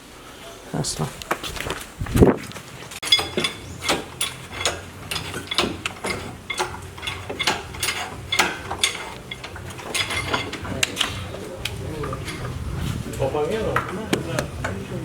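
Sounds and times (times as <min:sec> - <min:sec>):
metal tools clinking together: 0:03.0 - 0:11.4, 0:12.0 - 0:12.6.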